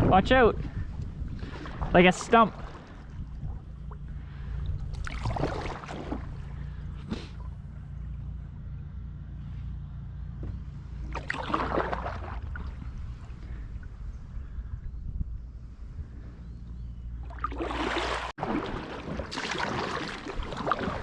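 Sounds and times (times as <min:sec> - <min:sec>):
steady low rumble: 0:00.0 - 0:21.0
kayak paddle swishes: 0:05.0 - 0:07.5.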